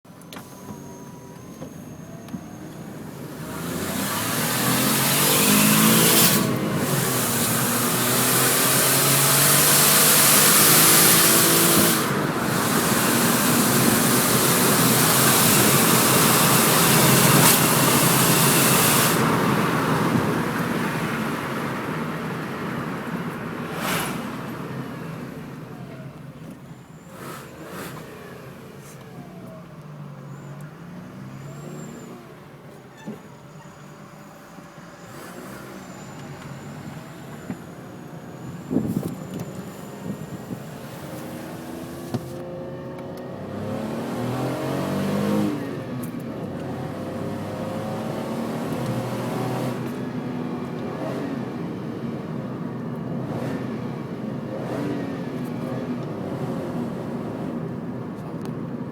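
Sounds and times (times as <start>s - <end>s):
car engine accelerating: 0.2s - 32.9s, 33.9s - 58.9s
exhaust whistling hiss: 0.3s - 22.3s, 23.3s - 29.4s.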